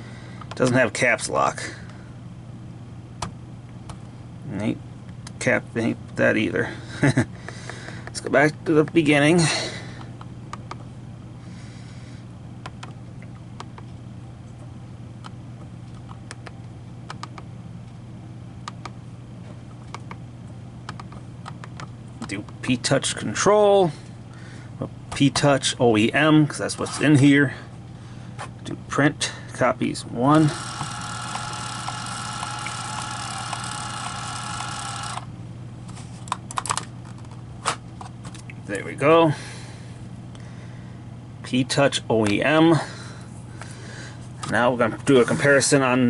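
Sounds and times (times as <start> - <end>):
steady low hum: 0.0 - 46.0
sharp clicks: 15.2 - 17.5
keypad keys clicking: 20.9 - 21.9
label maker motor whirring: 30.3 - 35.3.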